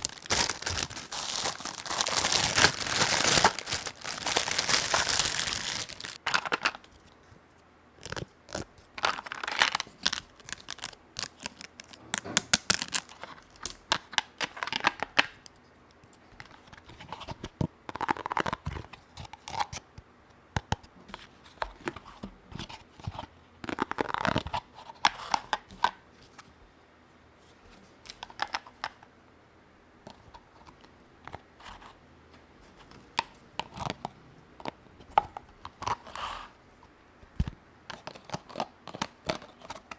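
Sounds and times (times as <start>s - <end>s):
wrapping crinkling and tearing: 0.0s - 6.8s, 8.0s - 13.8s.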